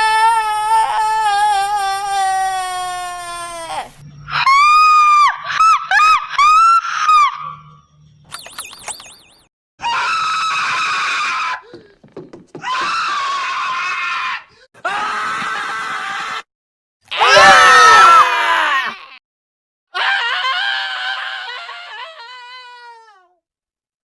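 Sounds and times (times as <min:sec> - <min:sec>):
harsh raspy screams: 0:00.0 - 0:07.6, 0:09.8 - 0:11.6, 0:12.6 - 0:16.5, 0:17.1 - 0:19.2
cartoon wail falling in pitch: 0:17.1 - 0:19.2.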